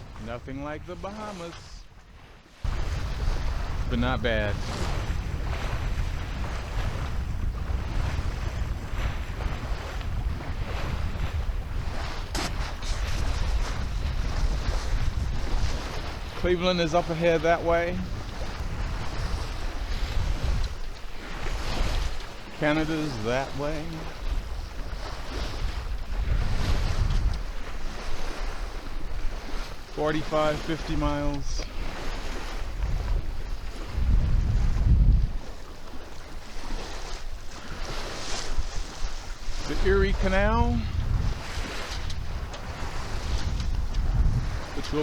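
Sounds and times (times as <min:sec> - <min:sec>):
water washing along a hull: 0:00.0 - 0:45.0
wind buffeting microphone: 0:00.0 - 0:45.0.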